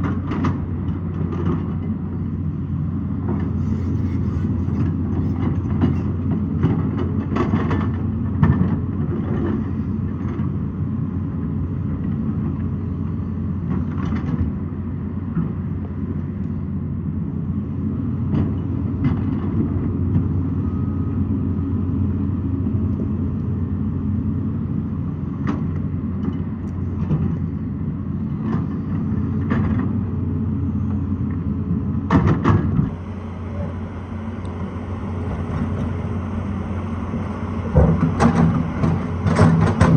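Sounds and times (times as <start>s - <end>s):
diesel engine running under load: 0.0s - 39.9s
metal knocks and clanks: 37.6s - 39.9s.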